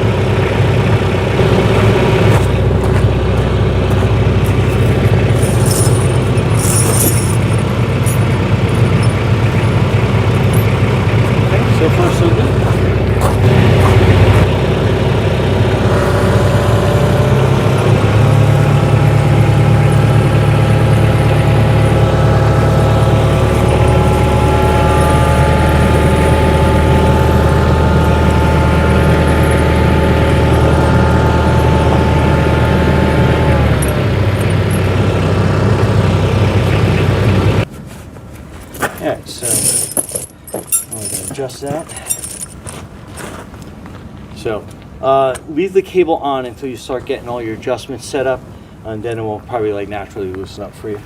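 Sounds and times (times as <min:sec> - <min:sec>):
whine: 0:00.0 - 0:37.7
tractor engine running: 0:00.0 - 0:45.0.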